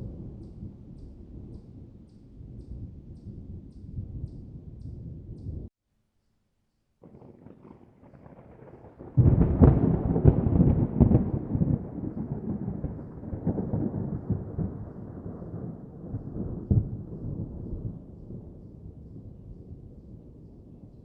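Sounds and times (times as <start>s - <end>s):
thunder rumbling and cracking: 0.0s - 5.7s, 7.0s - 21.0s.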